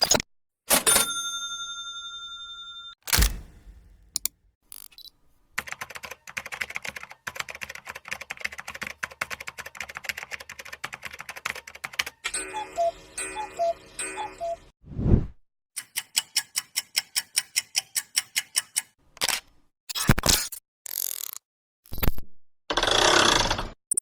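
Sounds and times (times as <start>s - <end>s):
sharp hit: 3.1s - 4.2s
keyboard typing: 3.1s - 13.7s.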